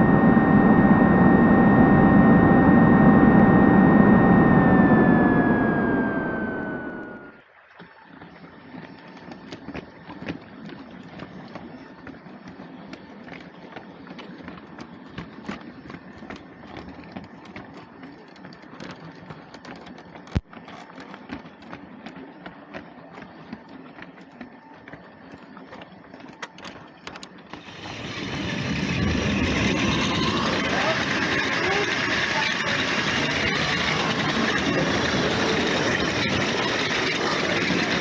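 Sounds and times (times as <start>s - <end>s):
small motor whirring: 0.0s - 10.5s, 23.3s - 38.0s.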